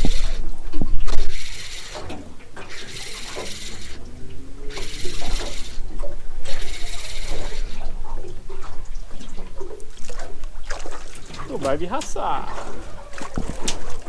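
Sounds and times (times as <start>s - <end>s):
water rushing and splashing: 8.0s - 14.0s.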